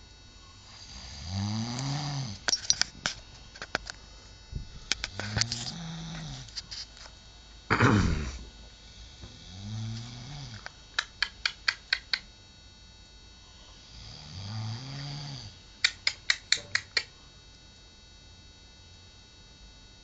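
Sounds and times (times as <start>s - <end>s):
people snoring: 0.7s - 2.5s, 5.2s - 6.5s, 7.7s - 8.5s, 9.3s - 10.6s, 13.9s - 15.6s
sharp clicks: 11.0s - 12.3s, 15.8s - 17.2s.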